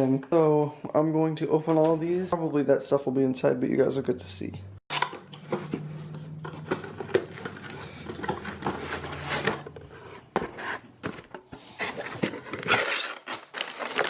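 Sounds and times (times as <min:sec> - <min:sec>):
box clicks and scrapes: 0:04.9 - 0:14.0
packing material crinkling: 0:11.9 - 0:14.0
tape and cardboard tearing: 0:11.9 - 0:14.0.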